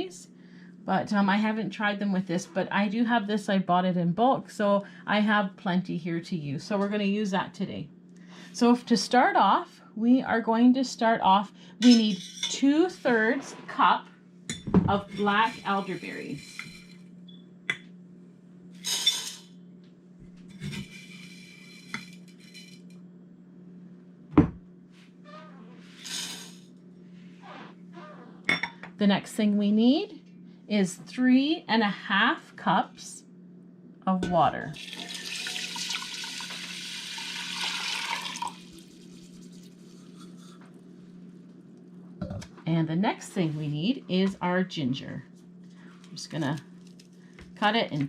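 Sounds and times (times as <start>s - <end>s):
water pouring into container: 34.8s - 39.0s.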